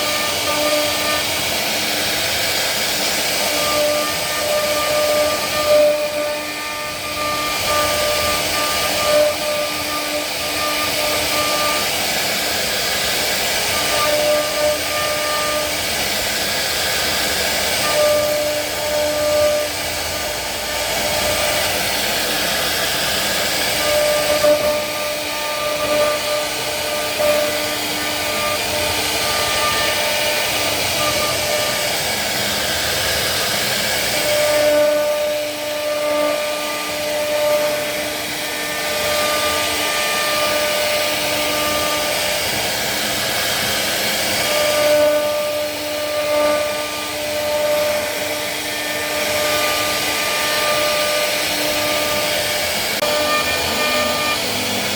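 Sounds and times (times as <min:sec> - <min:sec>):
router cutting wood hiss: 0:00.0 - 0:54.9
wood router spindle whine: 0:00.0 - 0:54.9.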